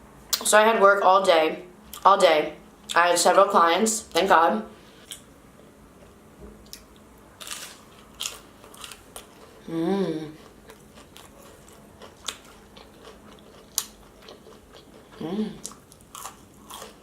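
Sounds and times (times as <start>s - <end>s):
person chewing crunchy food: 6.7s - 9.7s, 10.3s - 17.0s
person humming: 9.6s - 10.4s, 15.2s - 15.7s.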